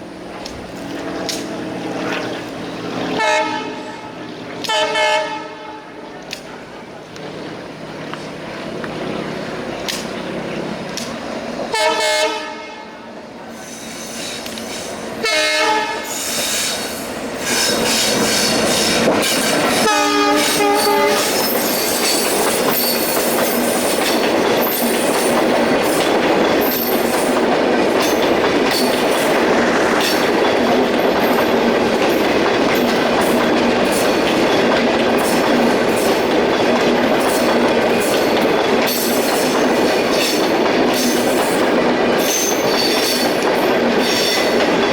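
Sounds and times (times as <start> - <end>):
train wheels rushing on rails: 0.0 - 44.9
train horn blasts: 3.2 - 6.1, 11.7 - 13.1, 15.2 - 16.3, 19.8 - 21.6
clicking over rail joints: 6.2 - 11.3.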